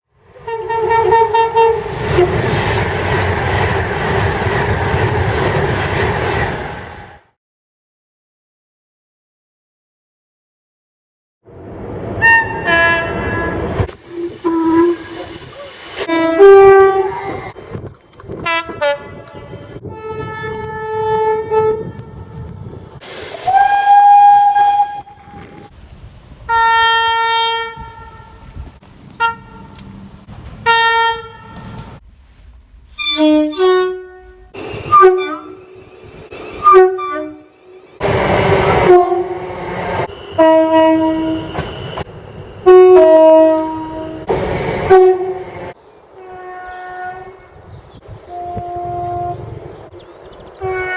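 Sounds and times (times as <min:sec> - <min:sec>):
train horn blasts: 0:00.4 - 0:02.3, 0:12.2 - 0:15.3, 0:16.0 - 0:17.6, 0:18.4 - 0:22.4, 0:23.4 - 0:25.7, 0:26.5 - 0:28.5, 0:29.2 - 0:29.8, 0:30.6 - 0:31.9, 0:33.0 - 0:47.6, 0:48.2 - 0:49.8, 0:50.6 - 0:50.9
rushing noise: 0:22.4 - 0:26.5.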